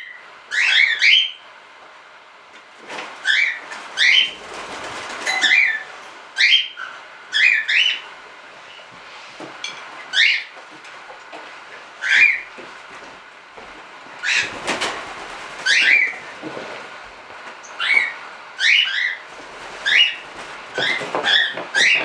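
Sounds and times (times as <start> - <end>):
cockatiels whistling calls: 0.0 - 1.4, 3.2 - 4.4, 5.2 - 8.0, 10.1 - 10.5, 12.0 - 12.5, 15.6 - 16.2, 17.7 - 19.2, 19.8 - 22.0.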